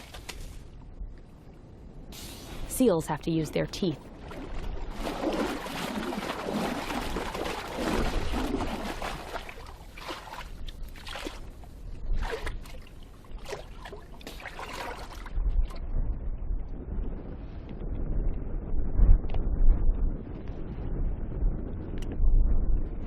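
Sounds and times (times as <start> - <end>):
water sloshing and trickling: 4.0 - 15.9
sharp splashing or knocking: 4.3 - 11.4.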